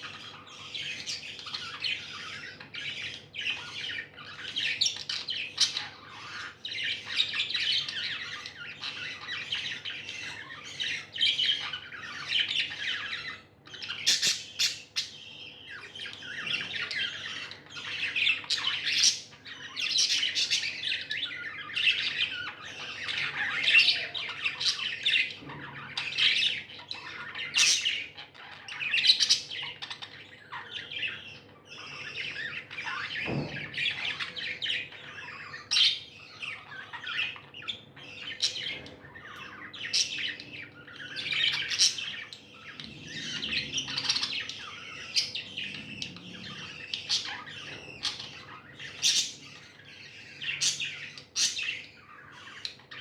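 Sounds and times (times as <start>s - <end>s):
budgerigars chirping and chattering: 0.0s - 53.0s.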